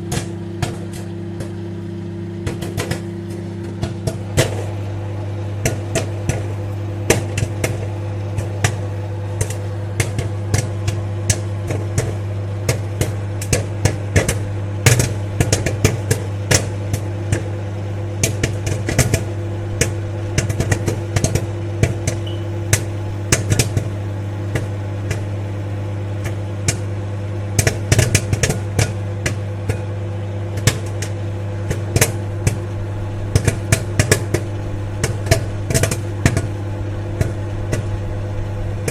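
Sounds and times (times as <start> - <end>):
microwave oven humming: 0.0 - 38.9
popcorn popping: 0.0 - 38.9.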